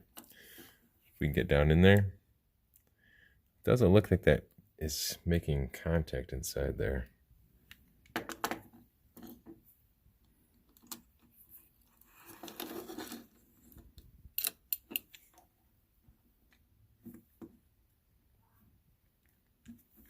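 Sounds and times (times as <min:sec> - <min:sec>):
small clicks and scraping: 0:07.6 - 0:09.6, 0:10.2 - 0:15.5, 0:19.1 - 0:20.0.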